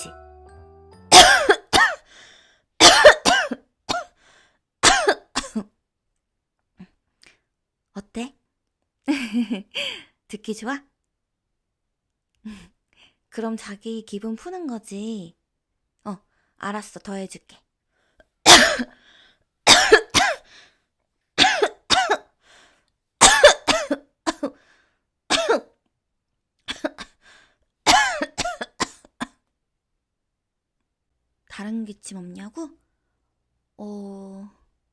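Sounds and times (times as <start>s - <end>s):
woman coughing: 1.1s - 2.1s, 2.8s - 4.2s, 4.8s - 5.8s, 18.5s - 19.0s, 19.7s - 20.4s, 21.4s - 22.3s, 23.2s - 24.6s, 25.3s - 25.8s, 26.7s - 27.2s, 27.9s - 29.4s.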